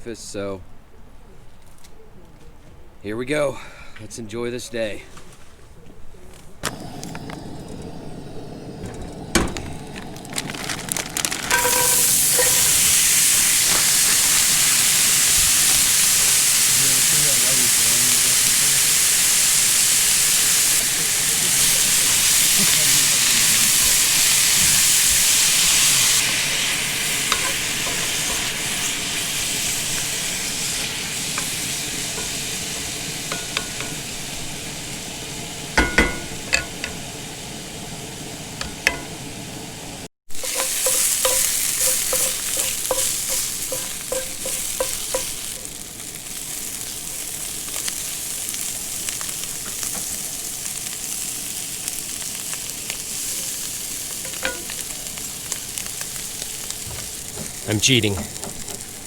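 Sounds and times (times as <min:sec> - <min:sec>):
food sizzling in a frying pan: 0:06.6 - 0:59.0
utensil scraping a pan: 0:11.5 - 0:14.4, 0:21.6 - 0:34.5, 0:40.3 - 0:45.7.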